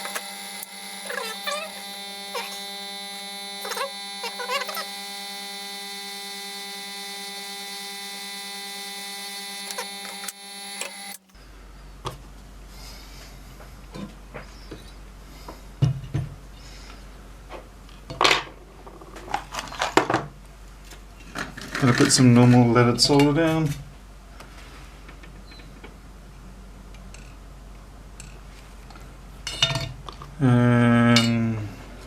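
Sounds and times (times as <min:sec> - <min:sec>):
hot air blower whining: 0:00.0 - 0:11.4.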